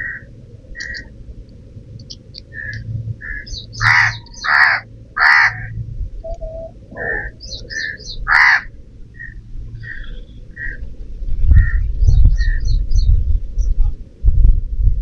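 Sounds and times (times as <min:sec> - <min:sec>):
crow cawing: 0:00.0 - 0:01.0, 0:02.6 - 0:05.8, 0:06.5 - 0:10.8.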